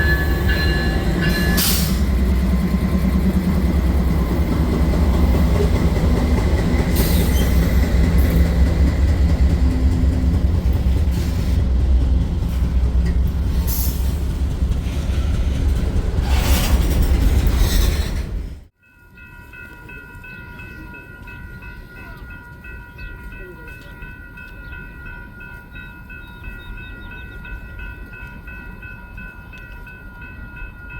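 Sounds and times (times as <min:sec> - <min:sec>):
train wheels rumbling on rails: 0:00.0 - 0:18.8
diesel locomotive engines: 0:00.0 - 0:30.9.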